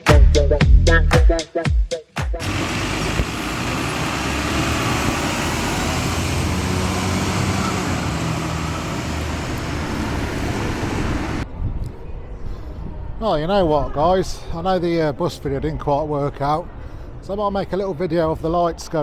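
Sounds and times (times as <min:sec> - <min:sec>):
heavy engine drone: 0:02.4 - 0:11.4
passing vehicles: 0:02.4 - 0:11.6.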